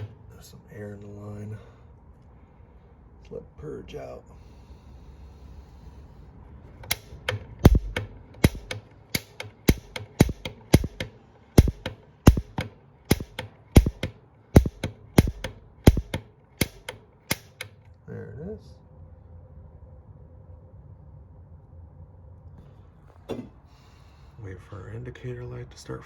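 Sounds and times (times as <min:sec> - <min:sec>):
piezo igniter clicking: 0:00.0 - 0:00.2, 0:06.8 - 0:17.8.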